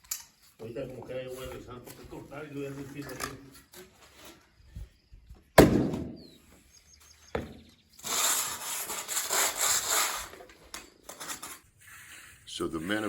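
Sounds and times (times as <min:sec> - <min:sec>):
tool scraping concrete: 0:07.9 - 0:13.0.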